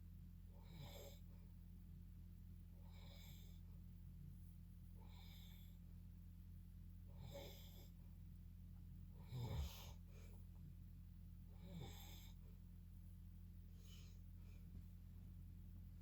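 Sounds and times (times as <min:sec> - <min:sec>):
person snoring: 0:09.2 - 0:10.0.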